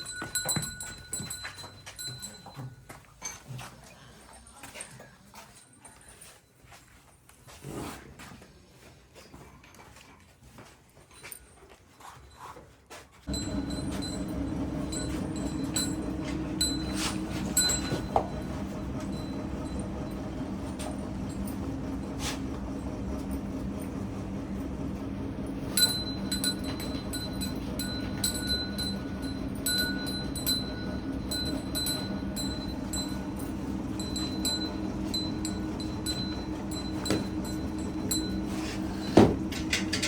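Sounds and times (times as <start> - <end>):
bell-like metallic rings: 0.0 - 3.0, 13.3 - 21.7, 25.7 - 40.0
steady low hum: 13.3 - 40.0.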